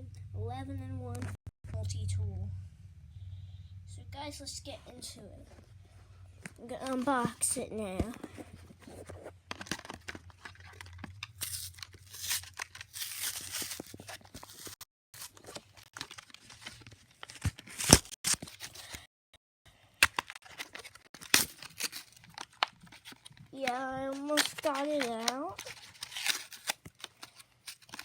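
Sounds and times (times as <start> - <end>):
packaging torn and crinkled: 9.5 - 18.9, 20.0 - 28.0.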